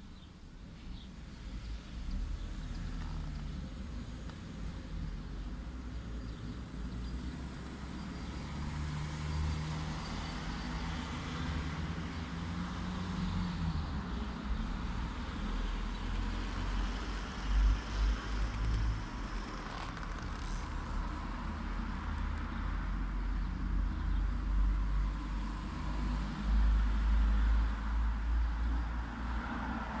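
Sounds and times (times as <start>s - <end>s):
cars passing: 7.4s - 30.0s.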